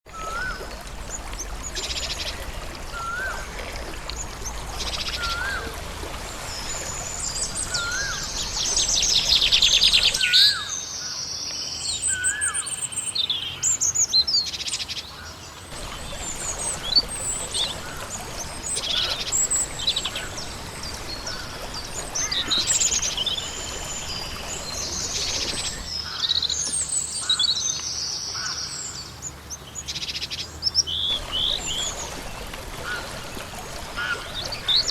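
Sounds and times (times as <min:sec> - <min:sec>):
birds chirping and singing: 0:15.8 - 0:26.4.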